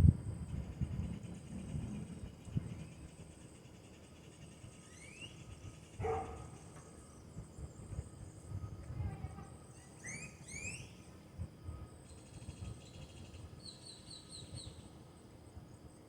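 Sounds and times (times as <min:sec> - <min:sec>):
birds whistling: 0:04.8 - 0:08.4, 0:09.7 - 0:11.1, 0:12.1 - 0:14.9.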